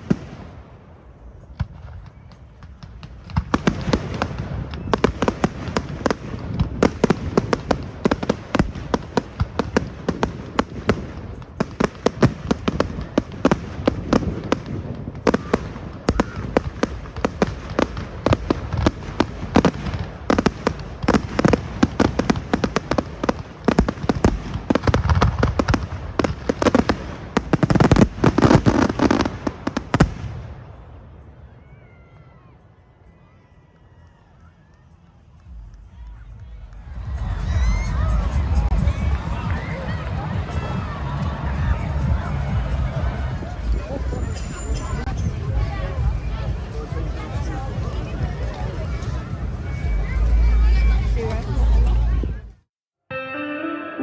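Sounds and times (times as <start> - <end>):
fireworks crackling and banging: 0.0 - 31.7, 34.4 - 52.7
heavy firework booms: 1.6 - 31.0.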